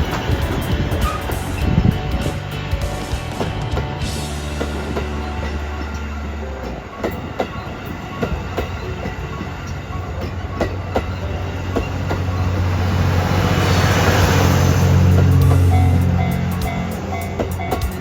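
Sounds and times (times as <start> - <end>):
train wheels clacking over rail joints: 0.0 - 18.0.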